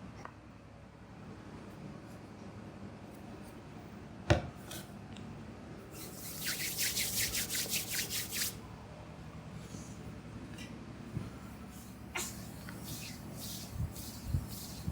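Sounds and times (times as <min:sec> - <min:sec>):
hands rubbing briskly: 0:06.0 - 0:08.6, 0:12.4 - 0:14.9.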